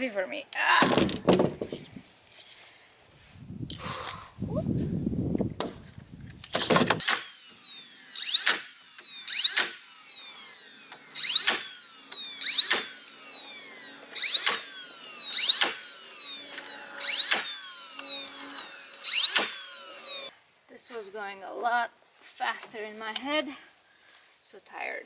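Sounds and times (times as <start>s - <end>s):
hammer driving nails into wood: 8.2s - 8.7s, 9.3s - 9.8s, 11.2s - 13.0s, 14.1s - 20.2s.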